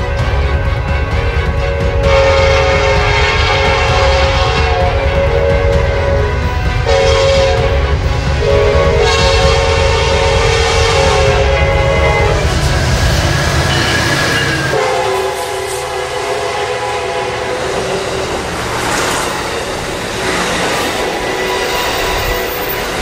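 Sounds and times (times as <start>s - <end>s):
train air horn chord: 0.0s - 13.1s, 13.7s - 18.3s
train rumbling past: 0.0s - 23.0s.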